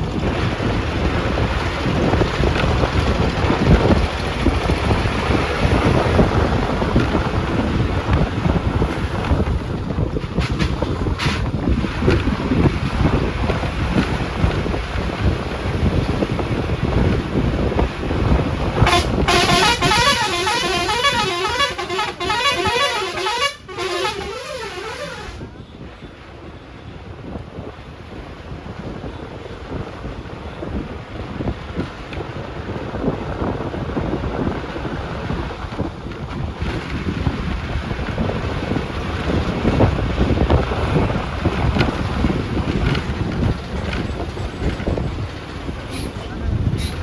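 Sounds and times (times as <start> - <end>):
wind and road noise: 0.0 - 47.0
warbling vehicle horn: 18.8 - 25.6.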